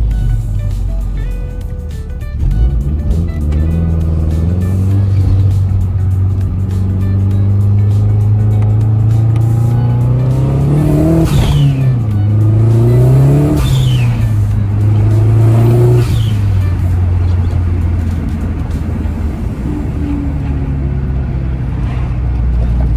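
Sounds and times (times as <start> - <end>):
car engine idling and revving: 0.0 - 22.9.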